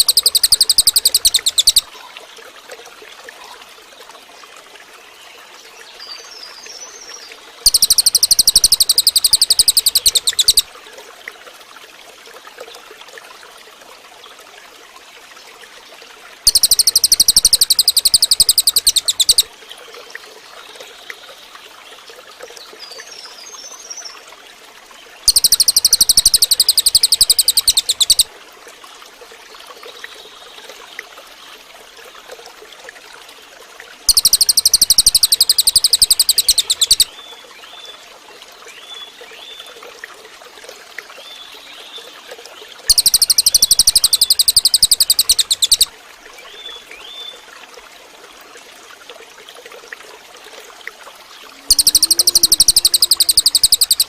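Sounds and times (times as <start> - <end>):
bird high-pitched trill: 0.0 - 1.8, 7.7 - 10.7, 16.5 - 19.5, 25.3 - 28.3, 34.1 - 37.1, 42.9 - 45.9, 51.7 - 54.0
soft bird chirps: 0.0 - 1.9, 6.0 - 10.7, 16.5 - 19.5, 25.3 - 28.3, 34.1 - 37.3, 42.9 - 45.9, 51.5 - 54.0
running water trickling: 0.0 - 54.0.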